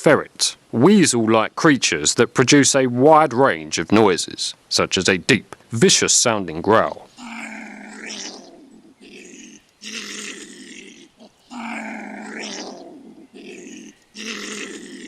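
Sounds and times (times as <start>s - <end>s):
marten growling: 7.1s - 15.0s.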